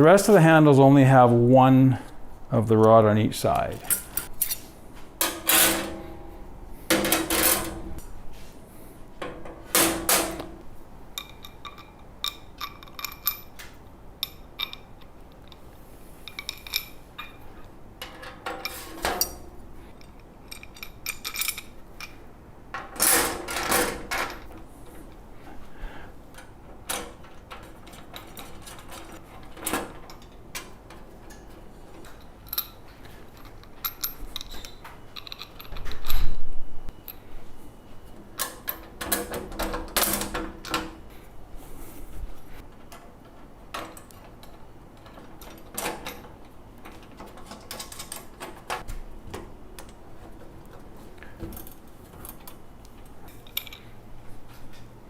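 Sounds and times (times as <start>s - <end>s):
metal hardware clinking: 11.1s - 22.2s, 26.9s - 36.4s, 53.2s - 54.0s.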